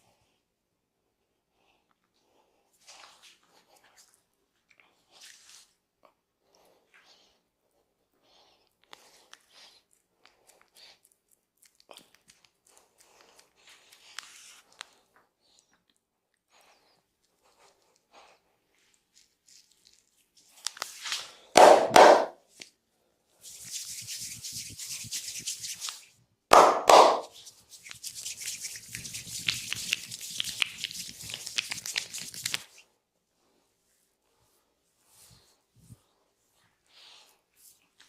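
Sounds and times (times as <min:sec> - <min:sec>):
hands rubbing skin: 0:08.9 - 0:15.1, 0:16.7 - 0:22.8, 0:23.4 - 0:32.9
hands slapping skin: 0:20.6 - 0:22.7, 0:23.5 - 0:32.8.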